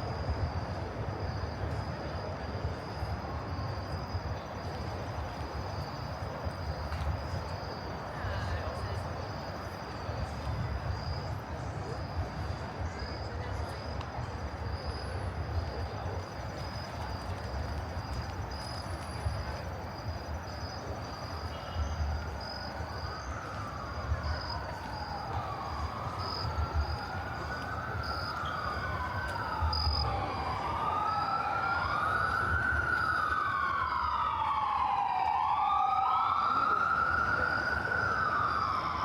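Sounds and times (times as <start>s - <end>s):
insects chirping: 0.0s - 39.0s
low city rumble: 0.0s - 39.0s
emergency vehicle siren wailing: 14.0s - 39.0s.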